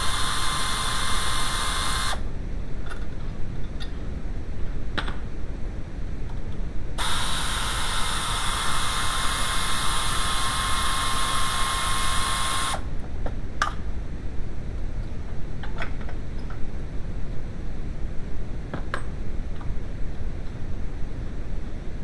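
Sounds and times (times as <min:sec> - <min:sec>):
power tool motor whining: 0:00.0 - 0:02.2, 0:07.0 - 0:12.9.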